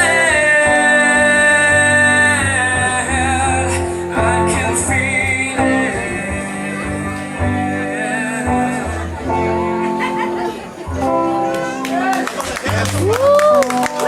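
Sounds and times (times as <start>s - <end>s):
person singing with vibrato: 0.0s - 9.8s
rock song: 0.0s - 12.0s
guitar: 0.0s - 14.0s.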